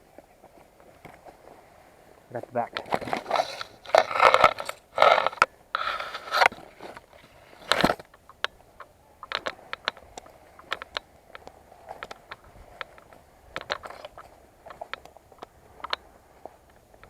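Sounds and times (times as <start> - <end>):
loud scraping and rustling: 2.8 - 8.1
sharp clicks: 7.7 - 16.0.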